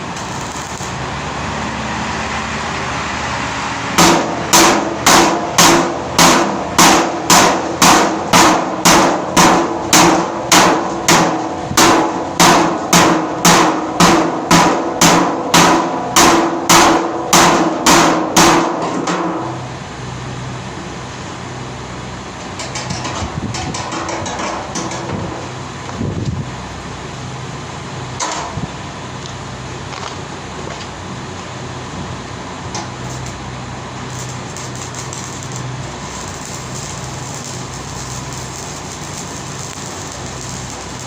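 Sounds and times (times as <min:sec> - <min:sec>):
steady machine noise: 0:00.0 - 0:18.4, 0:19.4 - 0:41.0
hammer striking metal: 0:04.0 - 0:19.4.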